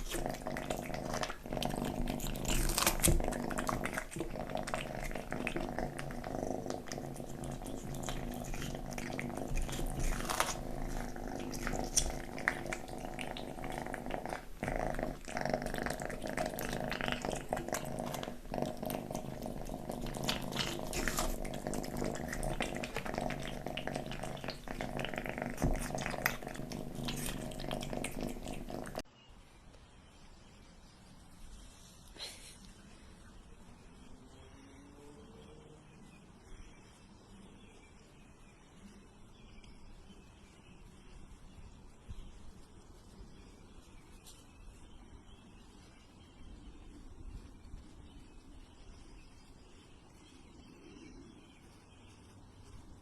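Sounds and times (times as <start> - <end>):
kitten purring and growling: 0.0 - 29.0
wet chewing and smacking: 0.0 - 29.1.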